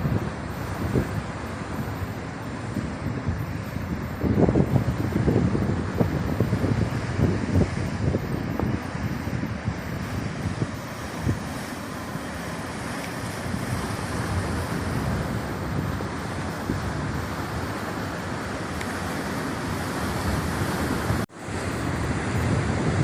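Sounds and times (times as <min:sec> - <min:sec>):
waves and surf rushing: 0:00.0 - 0:23.0
wind buffeting microphone: 0:00.0 - 0:23.0.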